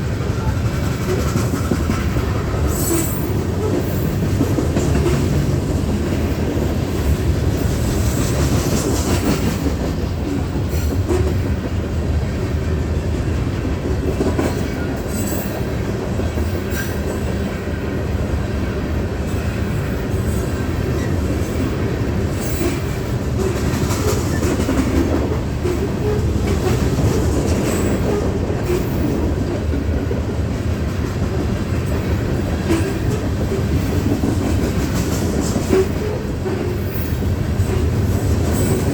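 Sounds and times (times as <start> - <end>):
train cars rumbling: 0.0 - 38.9
wheels clicking over rail joints: 0.1 - 17.6.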